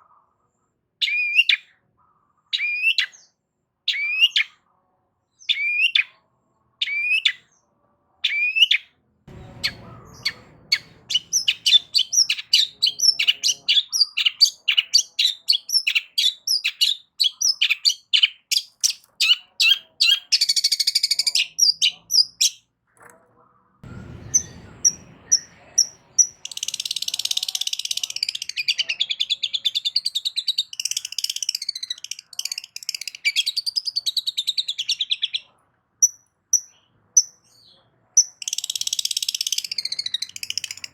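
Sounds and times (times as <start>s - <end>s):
shrike singing: 9.3s - 22.6s, 23.8s - 33.8s.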